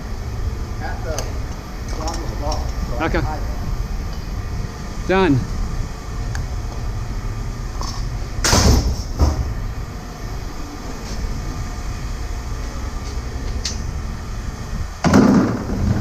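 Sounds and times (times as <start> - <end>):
steady low rumble: 0.0 - 16.0
door banging shut: 8.4 - 9.6.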